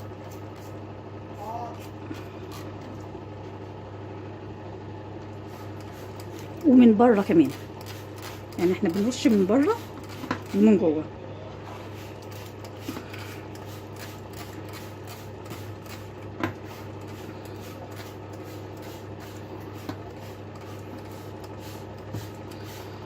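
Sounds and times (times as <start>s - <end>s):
spray bottle pumping: 0.0s - 0.8s, 5.5s - 10.6s, 11.8s - 23.0s
steady low hum: 0.0s - 23.0s.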